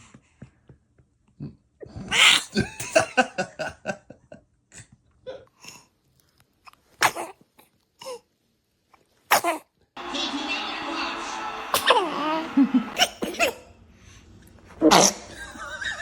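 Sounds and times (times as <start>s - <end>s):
baby sneezing: 2.1s - 2.6s, 7.0s - 7.4s, 9.3s - 9.7s, 11.7s - 13.7s, 14.8s - 15.3s
baby voice sounds: 11.7s - 13.6s.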